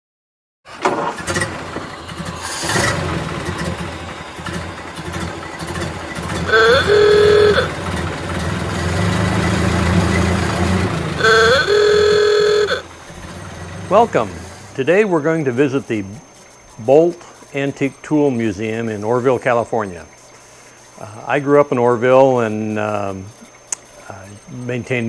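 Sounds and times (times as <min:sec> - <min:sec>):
engine knocks: 0:00.7 - 0:14.8
old car engines rumbling: 0:00.7 - 0:16.2
ah-ooga klaxon horn: 0:05.7 - 0:15.6.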